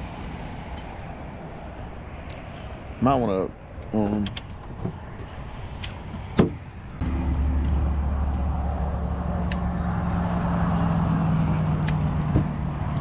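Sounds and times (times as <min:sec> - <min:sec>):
engine humming: 0:06.8 - 0:13.0.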